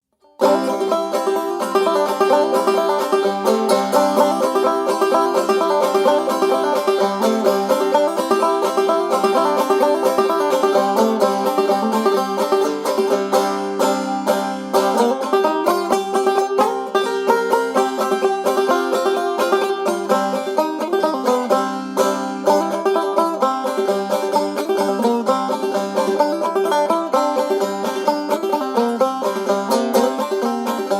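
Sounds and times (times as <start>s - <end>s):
banjo picking: 0.1s - 30.9s.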